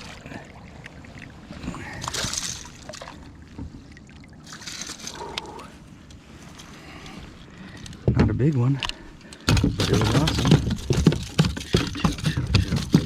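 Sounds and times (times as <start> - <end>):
water splashes: 0.0 - 6.5
water sloshing against kayak: 0.0 - 8.1.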